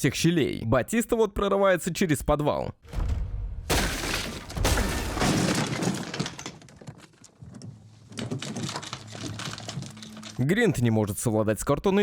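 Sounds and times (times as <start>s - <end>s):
loud crashing and clattering: 3.0s - 10.4s.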